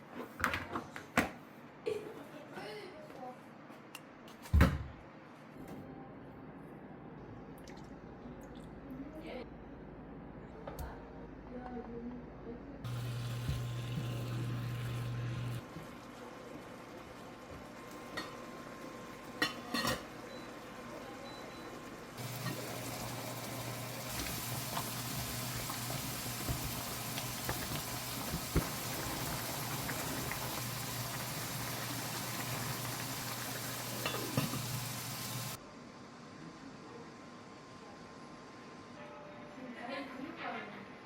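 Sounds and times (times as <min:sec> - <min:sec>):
food sizzling in a pan: 0:12.9 - 0:35.6.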